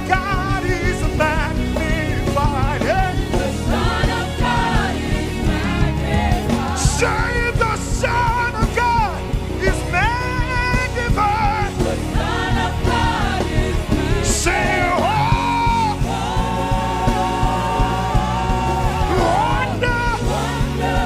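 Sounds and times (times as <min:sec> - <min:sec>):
band with keyboard bass and drums: 0:00.0 - 0:21.0
person singing: 0:19.0 - 0:20.5.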